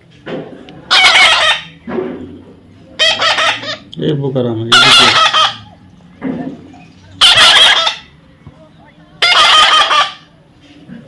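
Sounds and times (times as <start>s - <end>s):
parrot screeching: 0.9s - 1.8s, 3.0s - 3.9s, 4.7s - 5.8s, 7.2s - 8.1s, 9.2s - 10.3s.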